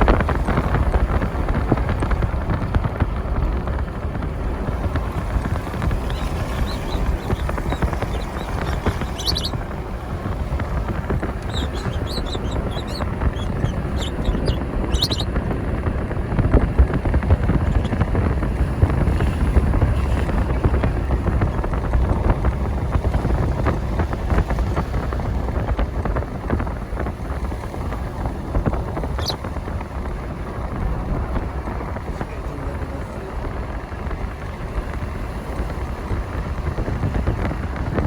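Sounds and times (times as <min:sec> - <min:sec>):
road noise: 0:00.0 - 0:38.0
wind buffeting microphone: 0:00.0 - 0:38.0
short high chirps: 0:06.1 - 0:09.6, 0:11.5 - 0:15.3.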